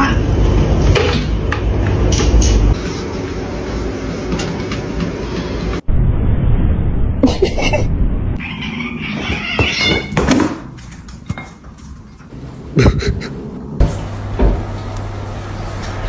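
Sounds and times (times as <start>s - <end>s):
low rumble: 5.8s - 8.4s
cat meowing: 8.4s - 10.3s.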